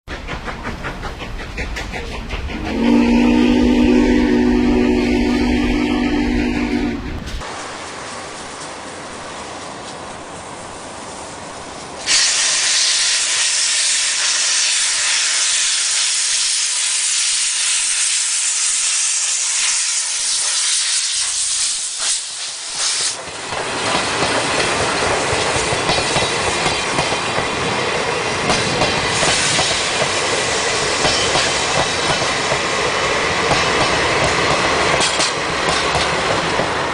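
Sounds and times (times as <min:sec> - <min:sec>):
train rumbling pulling away: 0:00.0 - 0:36.9
loud steam hiss: 0:00.1 - 0:36.9.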